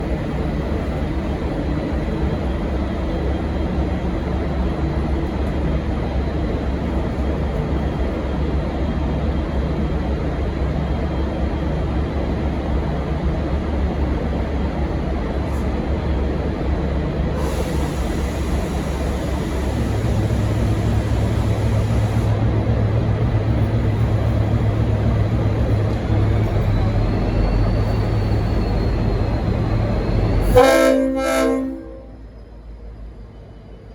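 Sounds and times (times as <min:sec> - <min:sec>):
diesel locomotive engine rumbling: 0:00.0 - 0:33.9
hiss: 0:17.4 - 0:22.3.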